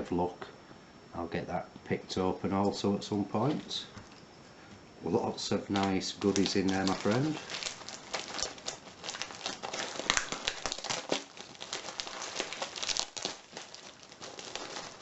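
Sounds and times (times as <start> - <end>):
packaging crinkling: 5.5 - 15.0.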